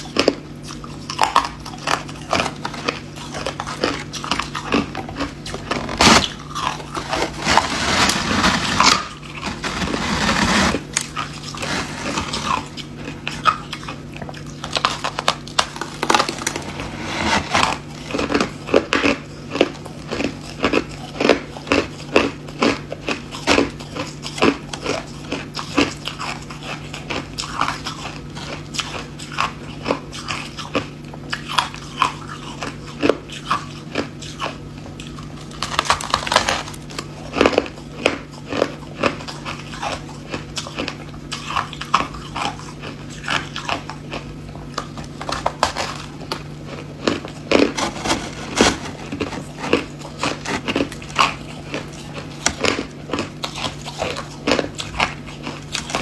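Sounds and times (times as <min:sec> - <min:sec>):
ice being crunched: 0:05.6 - 0:12.7, 0:14.7 - 0:18.5, 0:35.6 - 0:36.8, 0:47.0 - 0:51.1.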